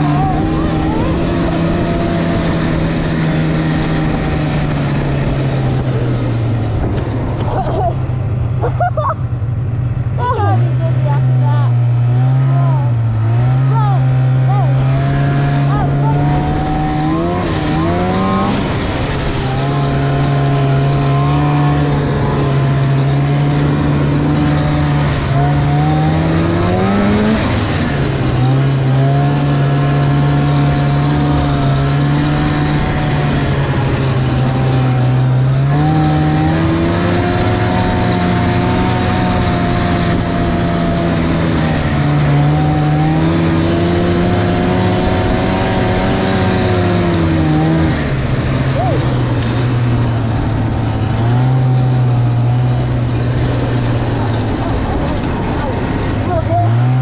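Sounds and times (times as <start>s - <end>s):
snowmobile engine running: 0.0s - 57.0s.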